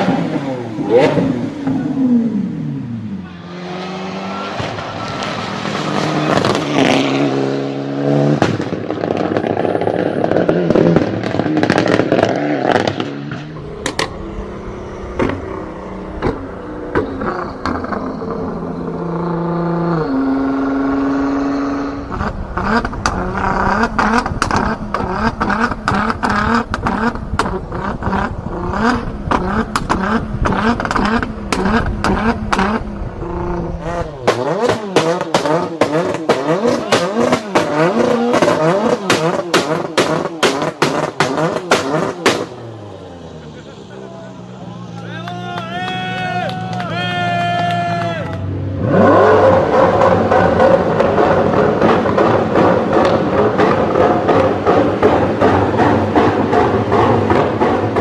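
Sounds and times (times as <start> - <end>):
car engines revving: 0.0 - 58.0
exhaust pops and crackles: 6.2 - 7.0, 8.3 - 14.2, 16.2 - 18.1, 22.1 - 42.8, 49.4 - 58.0.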